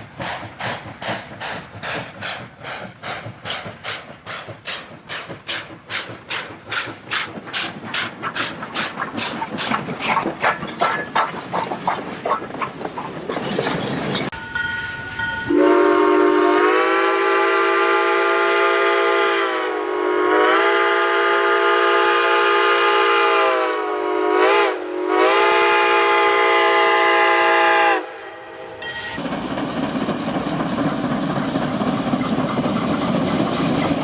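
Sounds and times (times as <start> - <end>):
steam locomotive exhaust chuffs: 0.0 - 28.1, 29.0 - 34.0
steam locomotive whistle: 15.5 - 29.2.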